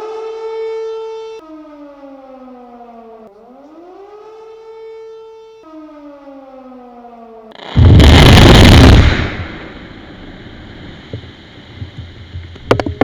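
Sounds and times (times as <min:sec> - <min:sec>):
motor-driven warning siren: 0:00.0 - 0:07.6
quarry blast: 0:07.6 - 0:11.0.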